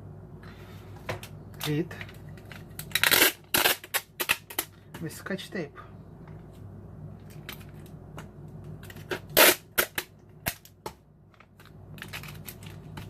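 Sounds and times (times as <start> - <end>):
sticky tape pulled and torn: 2.6 - 4.7, 8.8 - 10.8
tape rip: 2.7 - 4.7, 8.9 - 10.8.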